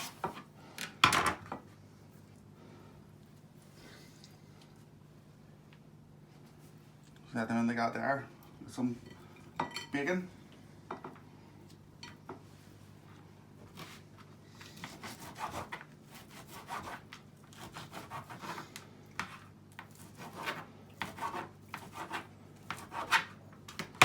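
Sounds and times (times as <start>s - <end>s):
food rubbing and scraping: 13.7s - 23.4s.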